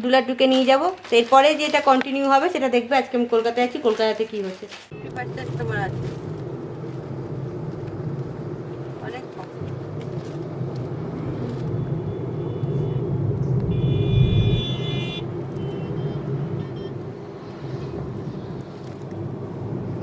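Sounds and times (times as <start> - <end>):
car engine and tyres rumbling: 4.8 - 20.0.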